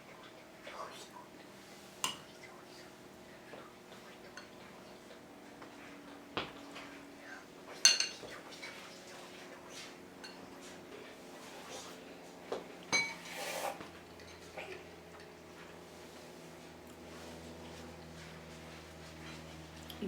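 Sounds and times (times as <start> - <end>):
spoon clinking against bowl: 7.8 - 8.2, 10.2 - 10.5, 12.9 - 13.3.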